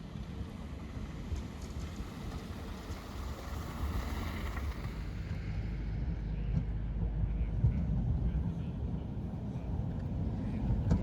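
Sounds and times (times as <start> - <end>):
tram rumbling: 0.0 - 11.0.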